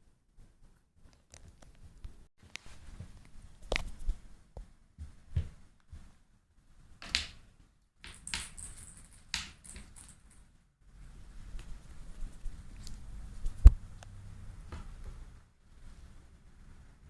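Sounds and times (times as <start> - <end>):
rustling: 8.1 - 16.2.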